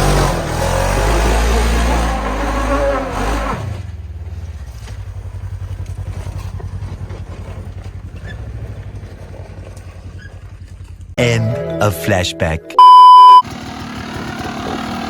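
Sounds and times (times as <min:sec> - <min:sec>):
off-road vehicle engine rumbling: 0:00.0 - 0:11.2, 0:12.8 - 0:15.0.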